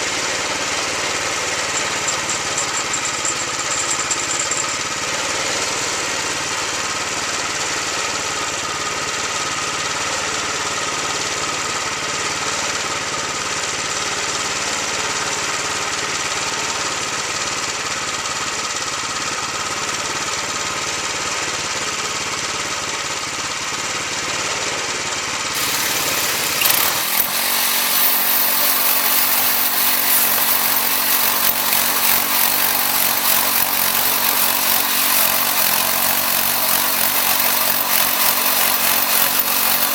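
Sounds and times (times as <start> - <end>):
band blade sawing wood: 25.6 - 39.9
band sawmill engine running: 25.6 - 39.9.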